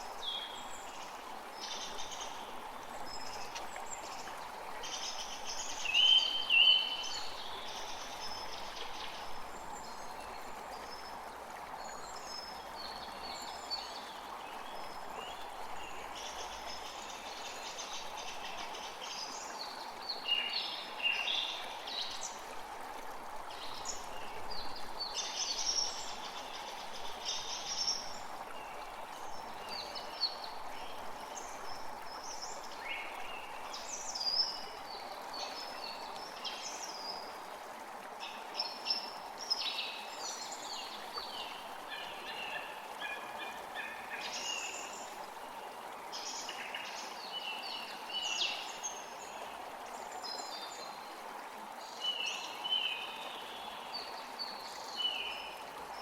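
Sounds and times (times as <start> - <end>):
creek running: 0.0 - 56.0.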